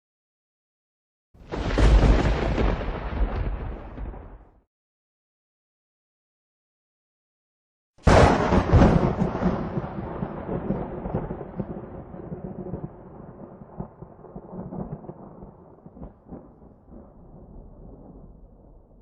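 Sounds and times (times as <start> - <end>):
thunderclap with rolling rumble: 1.4 - 4.6, 8.0 - 19.0.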